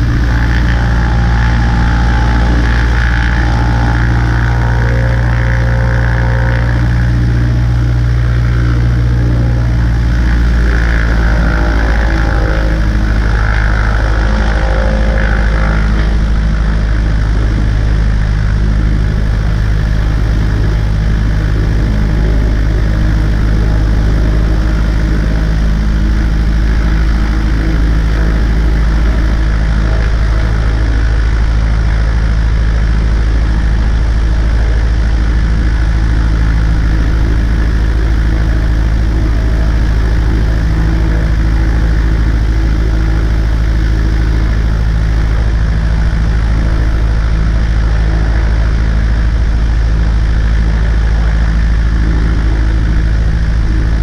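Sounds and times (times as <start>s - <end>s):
light aircraft engine and propeller: 0.0s - 54.0s.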